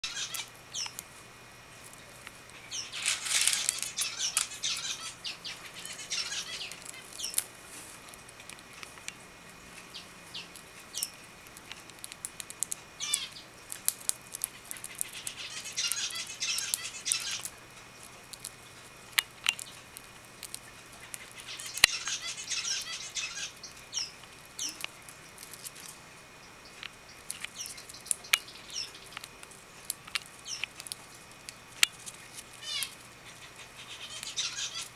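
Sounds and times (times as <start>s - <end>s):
budgerigar twittering: 0.0s - 1.0s, 3.6s - 7.4s, 13.0s - 13.5s, 14.7s - 17.5s, 21.0s - 24.8s, 27.6s - 29.2s, 32.6s - 34.9s
seed husks cracking: 1.8s - 5.1s, 10.4s - 26.0s, 26.8s - 34.9s.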